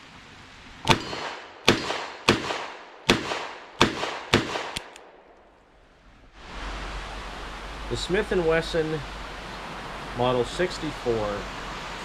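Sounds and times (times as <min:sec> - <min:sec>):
revolver shots echoing: 0:00.8 - 0:04.9.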